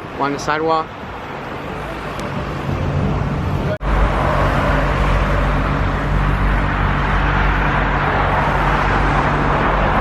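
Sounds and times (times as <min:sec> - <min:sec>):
passing cars rushing: 0:00.0 - 0:10.0
low engine hum: 0:01.6 - 0:10.0.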